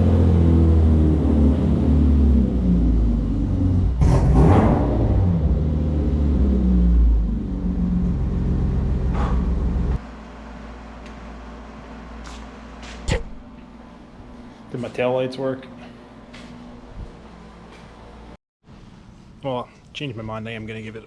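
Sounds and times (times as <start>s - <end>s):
car engine running: 0.0s - 10.0s.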